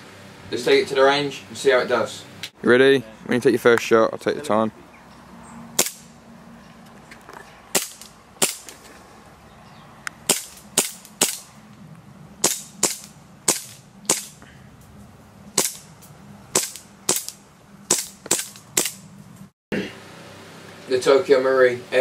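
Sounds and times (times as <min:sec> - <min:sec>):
airsoft pistol shots: 0:05.8 - 0:06.1, 0:07.7 - 0:08.6, 0:10.3 - 0:11.5, 0:12.4 - 0:14.4, 0:15.6 - 0:15.9, 0:16.5 - 0:19.0.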